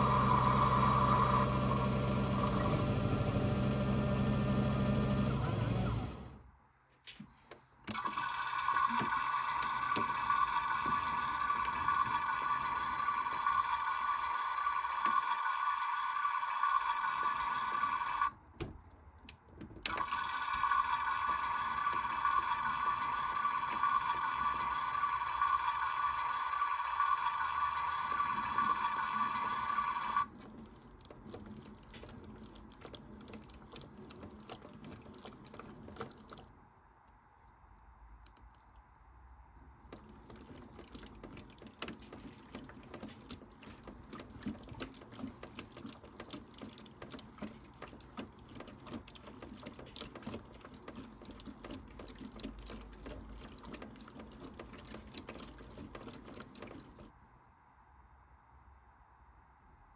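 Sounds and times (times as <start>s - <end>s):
toy washing machine drum turning: 8.0s - 18.3s, 19.9s - 30.4s.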